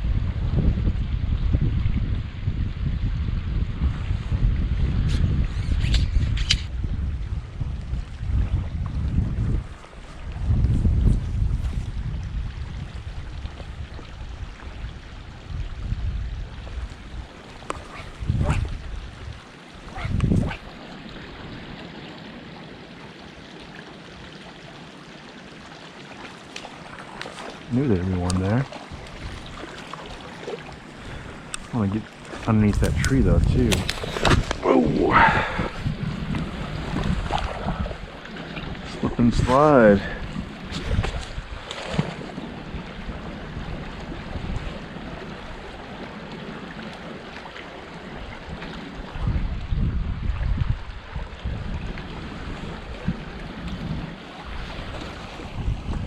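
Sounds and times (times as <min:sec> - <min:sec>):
wind buffeting microphone: 0:00.0 - 0:22.4, 0:26.8 - 0:56.0
stream rushing: 0:11.4 - 0:56.0.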